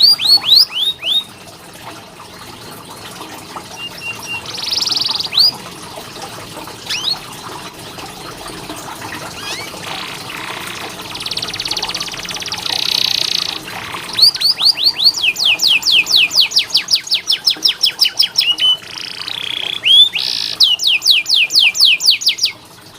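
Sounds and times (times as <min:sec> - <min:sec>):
canary singing: 0:00.0 - 0:01.4, 0:03.8 - 0:05.6, 0:06.9 - 0:07.4, 0:09.4 - 0:22.6.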